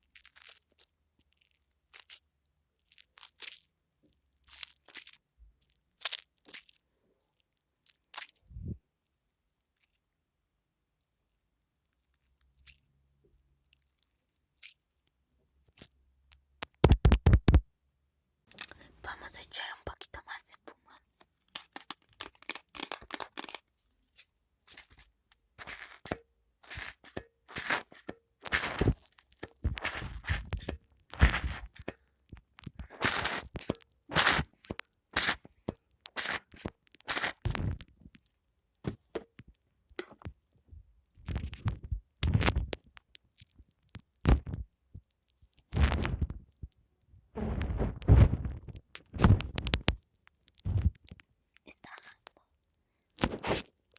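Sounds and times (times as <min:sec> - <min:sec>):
foam squished and crackling: 0:00.0 - 0:10.0, 0:11.0 - 0:17.6, 0:21.0 - 0:53.9
foam being squeezed: 0:16.6 - 0:17.6, 0:21.0 - 0:23.6, 0:24.7 - 0:39.3, 0:45.6 - 0:46.6, 0:47.4 - 0:51.2, 0:53.0 - 0:53.8
loud close thumps: 0:16.7 - 0:17.6.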